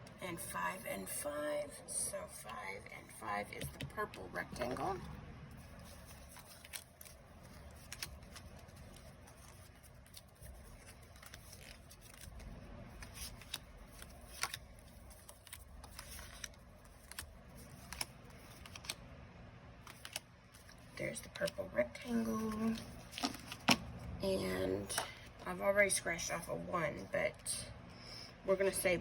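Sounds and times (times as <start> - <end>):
paper cards clicking and rustling: 5.6 - 19.0, 19.8 - 24.0.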